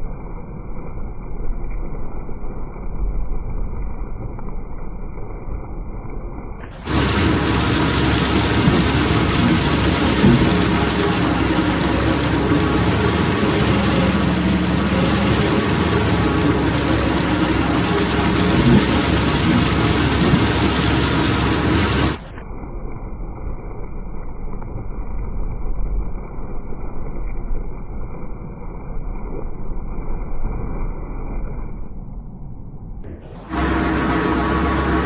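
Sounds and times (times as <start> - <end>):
bark peeling machine running: 6.7 - 22.3, 33.2 - 35.0.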